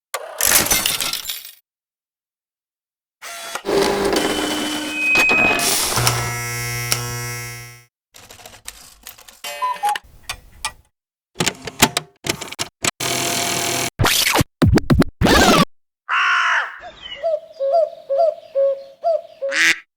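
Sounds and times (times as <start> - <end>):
low buzz: 3.7 - 7.9
high whistle-like tone: 4.9 - 5.7
clattering and clicks: 11.4 - 13.1.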